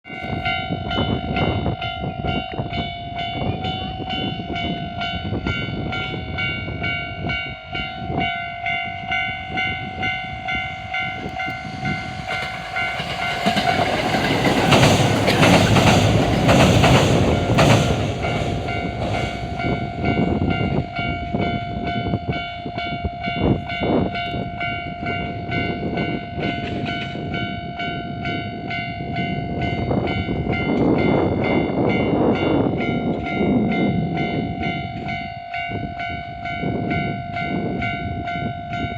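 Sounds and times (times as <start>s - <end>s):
train rushing past: 0.2s - 38.9s
wheels clacking over rail joints: 10.9s - 19.9s.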